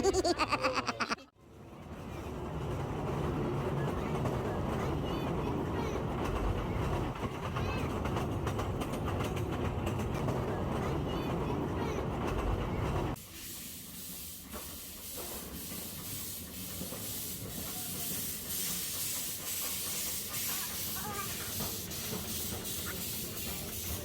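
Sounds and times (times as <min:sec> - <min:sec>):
train wheels clicking on track: 0:01.8 - 0:24.0
moving train hiss: 0:13.1 - 0:24.0.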